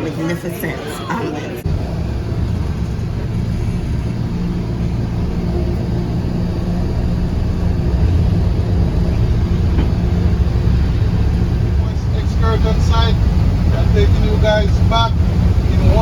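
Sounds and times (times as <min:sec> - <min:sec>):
vehicle engine and road rumble: 0:01.6 - 0:16.0.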